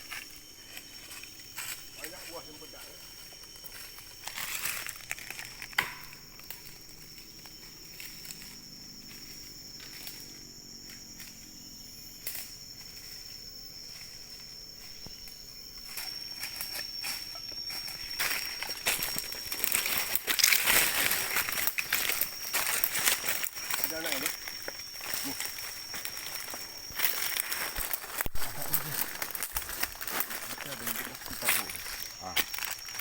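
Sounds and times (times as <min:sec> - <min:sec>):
footsteps in dry leaves: 0:00.1 - 0:06.1, 0:14.9 - 0:33.0
twigs snapping: 0:04.3 - 0:06.7, 0:17.6 - 0:33.0.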